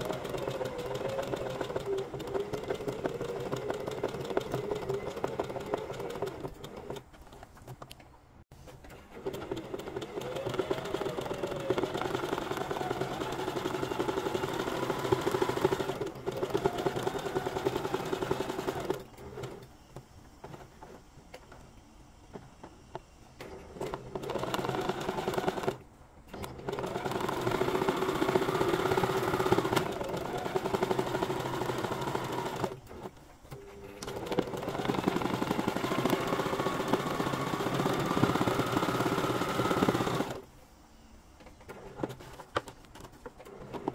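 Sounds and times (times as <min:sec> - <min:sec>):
sewing machine stitching: 0:00.0 - 0:07.1, 0:08.9 - 0:19.7, 0:23.4 - 0:40.4.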